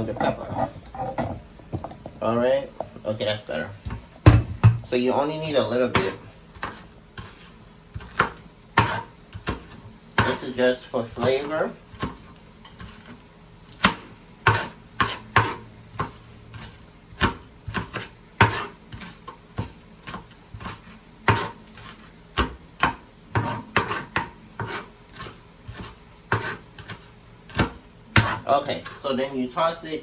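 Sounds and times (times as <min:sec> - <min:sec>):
knife cutting on a cutting board: 0:06.0 - 0:10.4, 0:11.9 - 0:29.0.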